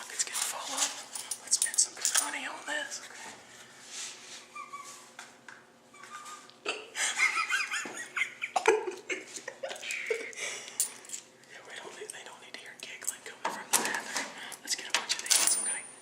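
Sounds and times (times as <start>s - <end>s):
men giggling: 6.6s - 10.8s.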